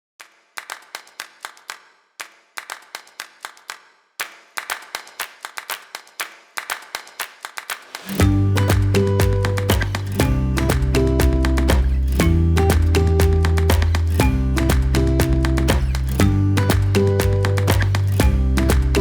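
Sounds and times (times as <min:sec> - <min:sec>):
rhythmic hand claps: 0:00.2 - 0:19.0
band with bass and guitar: 0:08.2 - 0:19.0.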